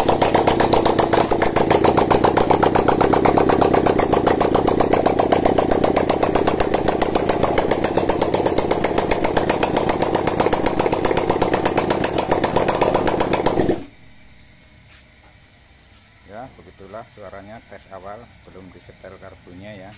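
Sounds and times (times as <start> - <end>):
v-twin engine running: 0.0 - 13.9.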